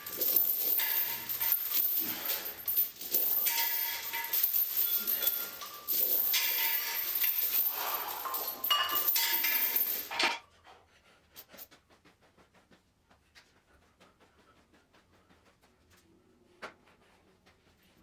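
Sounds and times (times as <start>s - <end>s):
metal weights clinking: 0.0s - 10.4s.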